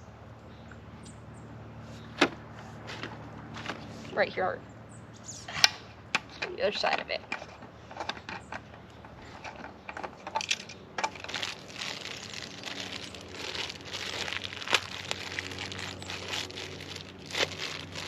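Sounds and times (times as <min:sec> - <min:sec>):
plastic bag crinkling: 0:11.0 - 0:18.0.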